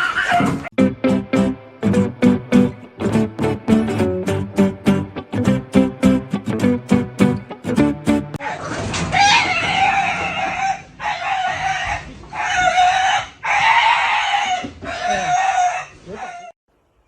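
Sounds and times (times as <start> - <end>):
harsh animal calls: 8.4 - 16.5.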